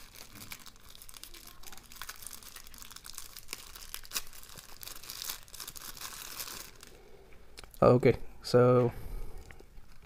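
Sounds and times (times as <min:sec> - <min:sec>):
packaging crinkling: 0:00.0 - 0:07.0.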